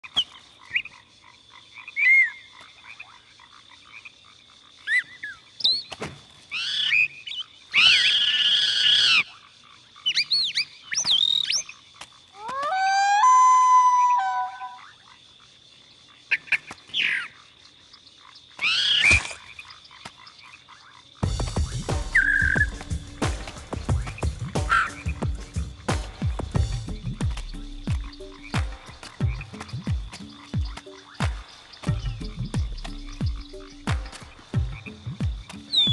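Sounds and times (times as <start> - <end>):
bird chirping and whistling: 12.6 - 14.8, 21.7 - 22.8, 35.7 - 35.9.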